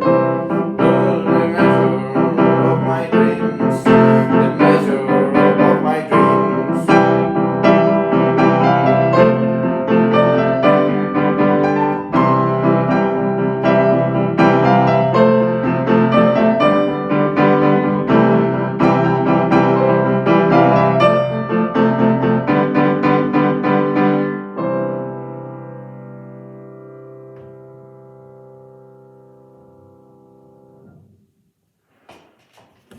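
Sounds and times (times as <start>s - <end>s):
piano chords and notes: 0.0s - 31.4s.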